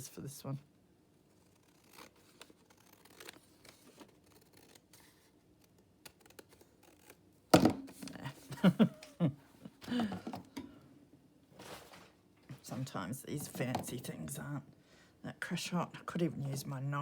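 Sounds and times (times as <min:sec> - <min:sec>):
scissors cutting paper: 0:01.4 - 0:07.2.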